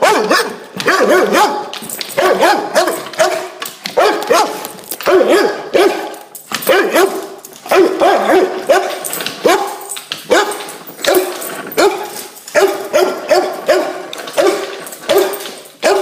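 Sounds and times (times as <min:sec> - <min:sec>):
dog barking: 0:00.0 - 0:16.0.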